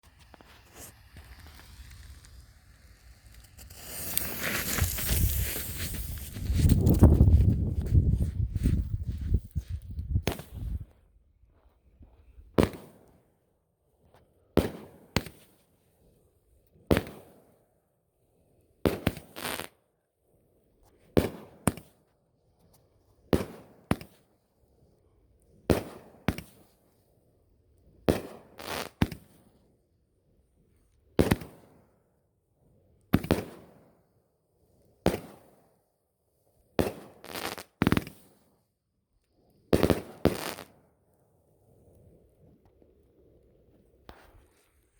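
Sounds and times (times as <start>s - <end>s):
firework bangs: 0.0s - 8.0s, 39.8s - 40.7s.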